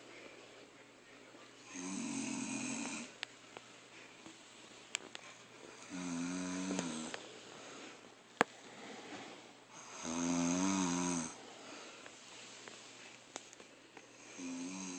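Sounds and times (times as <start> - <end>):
quiet breathing: 0.0 - 14.9
woman snoring: 1.6 - 3.1, 5.8 - 7.2, 9.8 - 11.4, 14.2 - 14.9.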